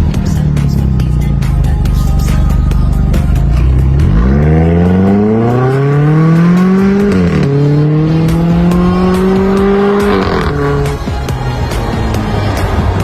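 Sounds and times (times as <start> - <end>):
car engine accelerating hard: 3.0 - 13.0.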